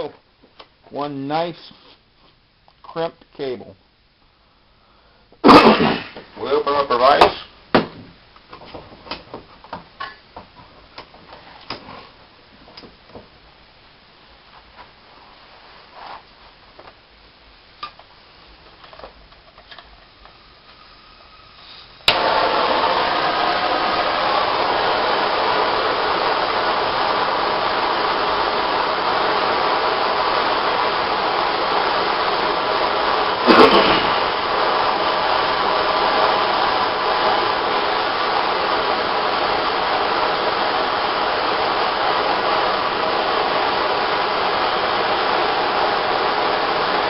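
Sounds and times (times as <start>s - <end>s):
heating tool rushing: 20.9s - 47.0s.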